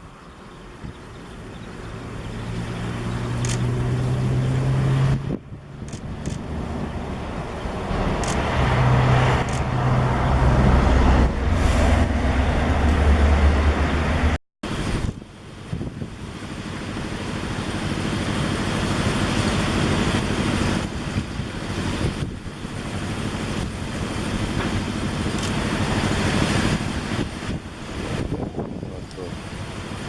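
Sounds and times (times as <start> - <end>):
vehicles passing: 0.0 - 15.8.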